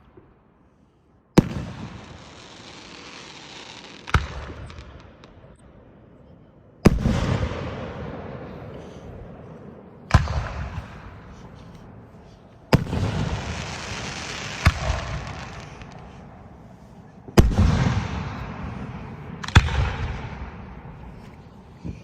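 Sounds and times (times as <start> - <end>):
firework bangs: 1.4 - 5.4, 6.9 - 9.0, 10.0 - 11.8, 12.7 - 16.3, 17.3 - 21.0
firework rumble: 6.9 - 22.0.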